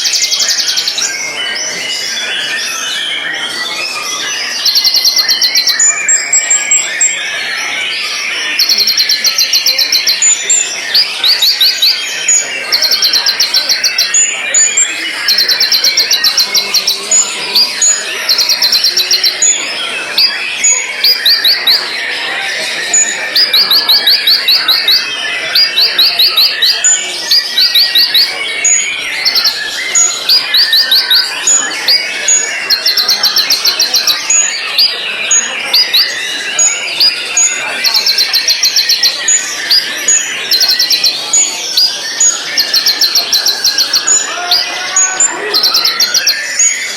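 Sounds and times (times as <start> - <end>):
background birds chirping: 0.0 - 46.9
bird singing sharp high notes: 0.0 - 46.9.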